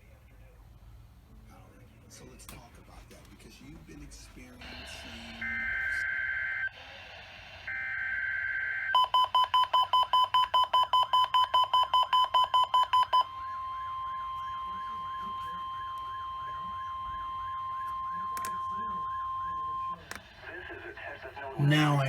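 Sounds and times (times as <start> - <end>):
weather radio alarm beeps: 4.6 - 22.0.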